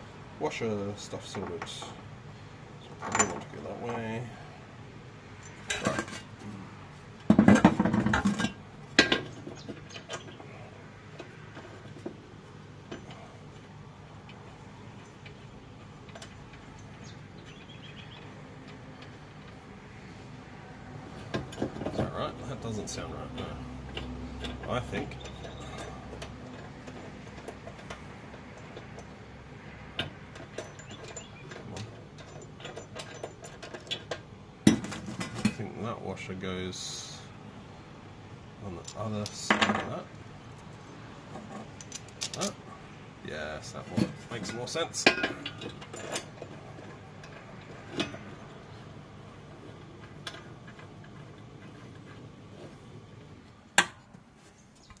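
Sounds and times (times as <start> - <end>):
metal hardware clattering: 2.8 - 4.2, 5.4 - 6.3, 7.2 - 10.4, 23.2 - 29.1, 29.9 - 35.6, 38.8 - 42.7, 43.8 - 48.9.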